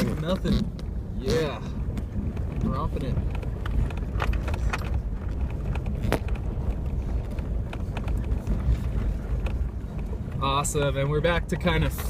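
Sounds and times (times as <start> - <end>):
truck engine rumble: 0.0 - 12.0
sharp knocks and rattles: 2.0 - 10.4.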